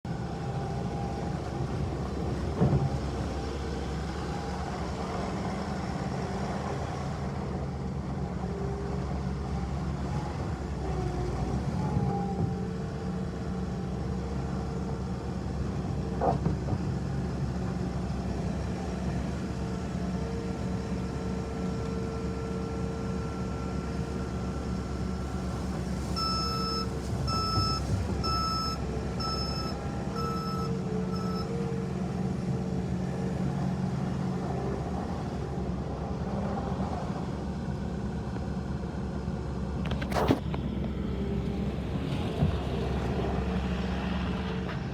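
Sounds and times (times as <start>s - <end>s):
diesel engine running: 0.0s - 44.9s
back-up alarm beeping: 26.2s - 31.5s.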